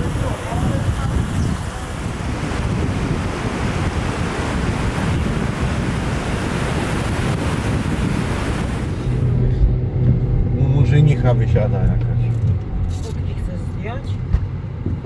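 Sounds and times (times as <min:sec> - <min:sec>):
surf washing on shore: 0:00.0 - 0:10.1
wind buffeting microphone: 0:00.0 - 0:15.0.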